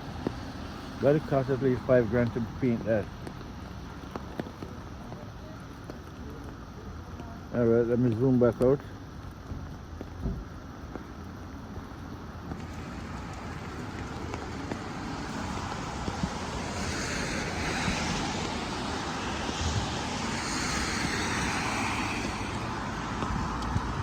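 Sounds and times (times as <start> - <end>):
tyres hissing on wet road: 0.0 - 24.0
vehicle passing: 12.6 - 24.0.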